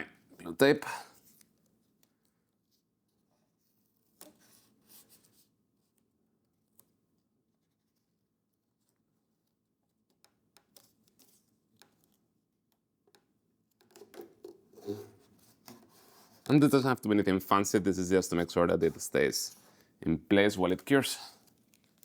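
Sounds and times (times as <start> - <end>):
tape crinkling and rubbing: 13.7 - 16.7, 20.7 - 22.0.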